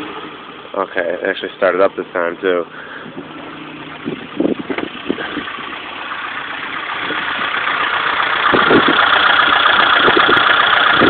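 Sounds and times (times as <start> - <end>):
car engine idling: 0.0 - 11.0
irregular engine thumps: 2.6 - 11.0.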